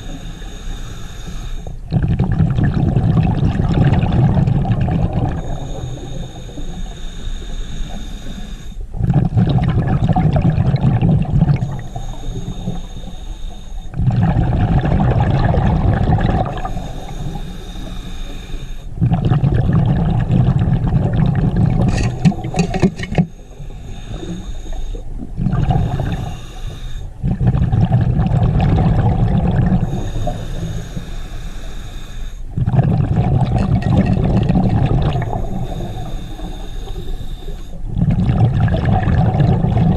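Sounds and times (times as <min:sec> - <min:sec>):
regulator inhale hiss: 0:00.0 - 0:01.9, 0:05.3 - 0:09.0, 0:11.5 - 0:14.0, 0:16.4 - 0:19.0, 0:21.7 - 0:27.2, 0:29.6 - 0:32.6, 0:35.0 - 0:38.0
exhaled bubbles gushing: 0:01.8 - 0:06.0, 0:08.9 - 0:11.8, 0:13.9 - 0:16.9, 0:19.0 - 0:23.3, 0:25.1 - 0:26.4, 0:27.1 - 0:30.7, 0:32.5 - 0:36.1, 0:37.8 - 0:39.9.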